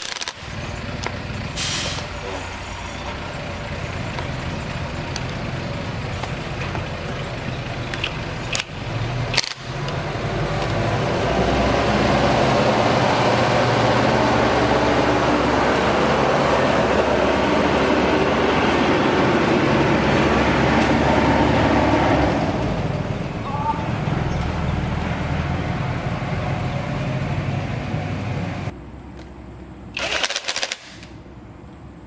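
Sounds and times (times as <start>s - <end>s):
sharp clicks: 0.0s - 1.2s, 7.8s - 10.0s, 30.0s - 31.2s
engine running: 0.0s - 32.0s.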